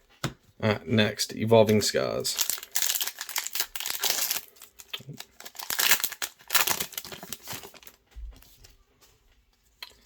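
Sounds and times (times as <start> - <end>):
foil wrapper crinkling: 2.3 - 8.0.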